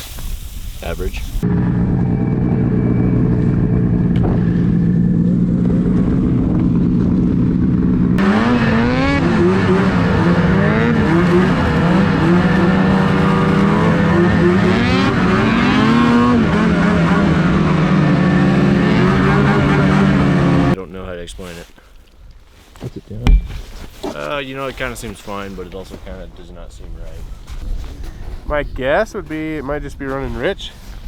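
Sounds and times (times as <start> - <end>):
snowmobile engine idling and revving: 1.4 - 20.8.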